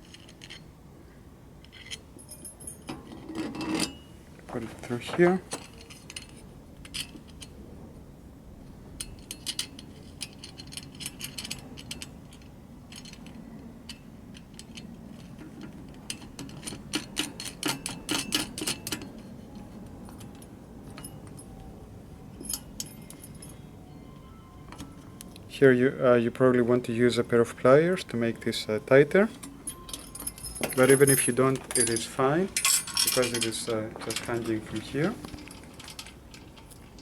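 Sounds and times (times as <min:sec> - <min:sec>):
small metal parts clinking: 0:00.0 - 0:00.7, 0:01.6 - 0:04.1, 0:04.8 - 0:07.6, 0:09.0 - 0:21.6, 0:22.4 - 0:23.6, 0:29.2 - 0:37.0.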